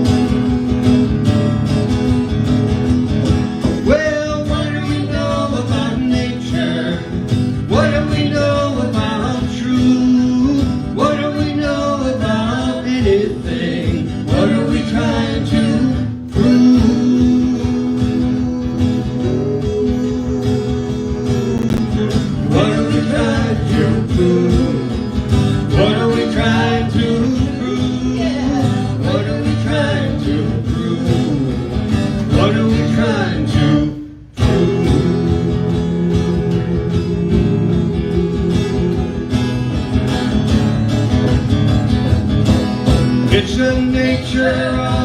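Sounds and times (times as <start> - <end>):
acoustic guitar accompaniment: 0.0 - 45.0
melodic lead line: 19.2 - 22.5.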